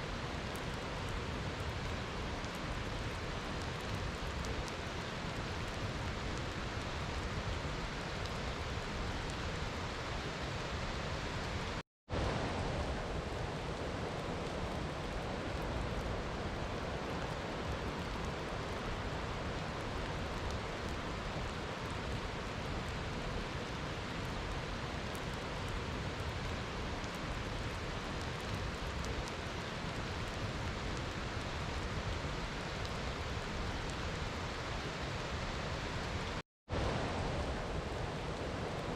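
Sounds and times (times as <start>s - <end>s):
steady rainfall: 0.0s - 38.9s.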